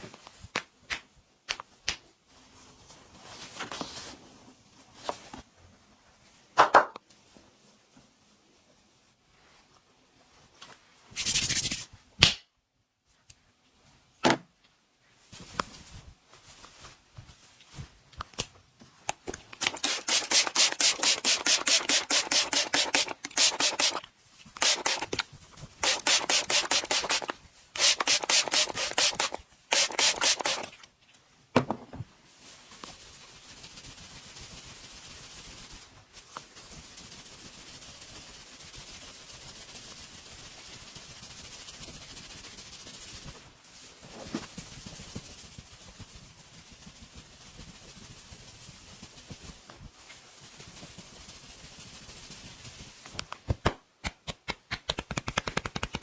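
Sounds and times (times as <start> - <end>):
faint steady hiss: 0.0 - 56.0
hands rubbing briskly: 11.1 - 12.0, 19.5 - 30.8, 32.4 - 53.3, 54.0 - 56.0.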